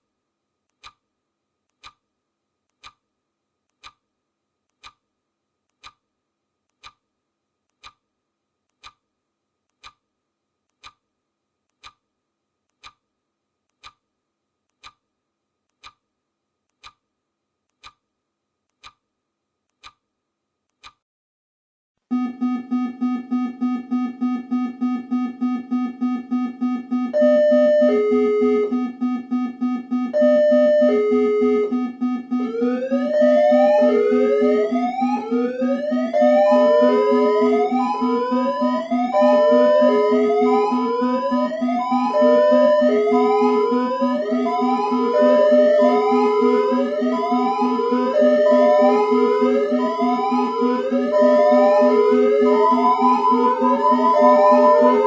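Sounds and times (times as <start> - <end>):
timer ticking: 0.7 - 1.0, 1.7 - 2.0, 2.7 - 3.0, 3.7 - 4.0, 4.7 - 5.0, 5.7 - 6.0, 6.7 - 7.0, 7.7 - 8.0, 8.7 - 9.0, 9.7 - 10.0, 10.7 - 11.0, 11.7 - 12.0, 12.7 - 13.0, 13.7 - 14.0, 14.7 - 15.0, 15.7 - 16.0, 16.7 - 17.0, 17.7 - 18.0, 18.7 - 19.0, 19.7 - 20.0, 20.7 - 21.0, 22.1 - 55.0
electronic alarm beeping: 22.1 - 55.0.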